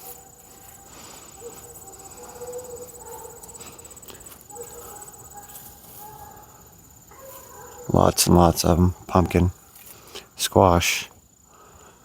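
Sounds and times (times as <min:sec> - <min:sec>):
crickets trilling: 0:00.0 - 0:12.0.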